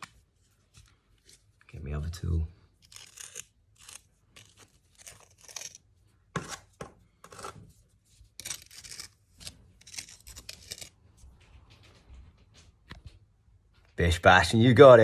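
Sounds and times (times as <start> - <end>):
scraping and rustling on brick: 2.8 - 12.2.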